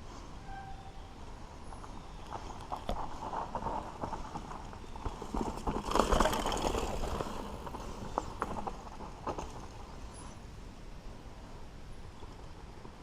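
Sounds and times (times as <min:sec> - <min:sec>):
mountain bike rattling over bumps: 0:01.8 - 0:10.4.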